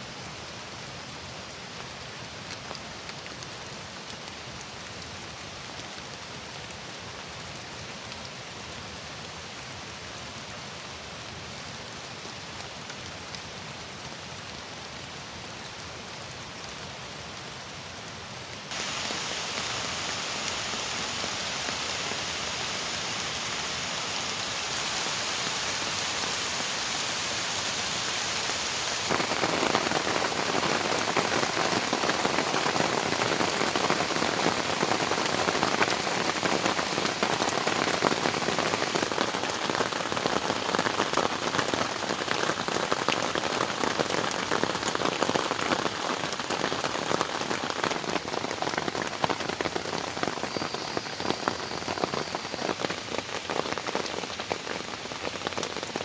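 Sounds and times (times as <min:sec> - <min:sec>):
heavy rain falling: 0:00.1 - 0:56.0
raindrops striking a surface: 0:00.1 - 0:56.0.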